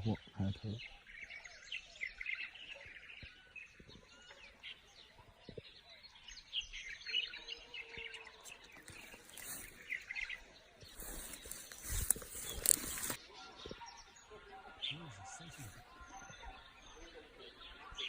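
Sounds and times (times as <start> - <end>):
small birds chirping: 0.0 - 18.0
brief rustle: 8.5 - 9.9, 10.9 - 13.2.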